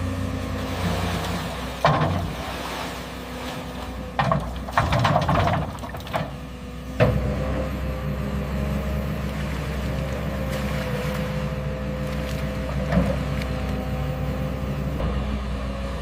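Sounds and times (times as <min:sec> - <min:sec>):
diesel engine running: 0:00.0 - 0:16.0
metallic clanks and knocks: 0:01.8 - 0:02.4, 0:04.1 - 0:06.4.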